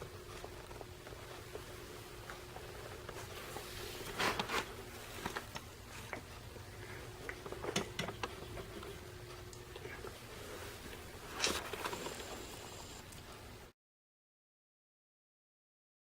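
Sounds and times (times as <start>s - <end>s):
steady low hum: 0.0s - 13.7s
faint rustles and clicks: 0.1s - 13.4s.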